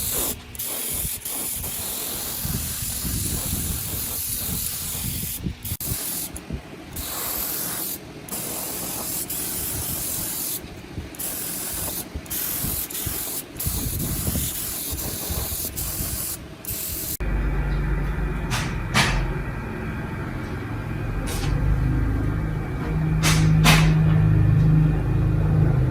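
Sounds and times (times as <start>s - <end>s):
pressurised spray hissing: 0.0s - 17.2s
steady low hum: 0.0s - 25.9s.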